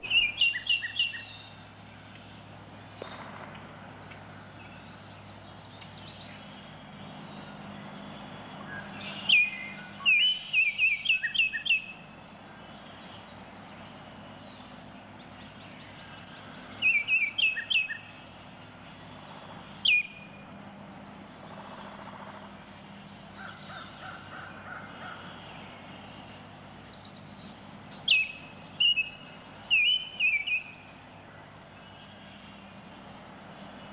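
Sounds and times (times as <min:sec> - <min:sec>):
bird whistling calls: 0:00.0 - 0:01.6, 0:08.7 - 0:12.0, 0:16.1 - 0:18.3, 0:19.8 - 0:20.4, 0:27.9 - 0:30.9.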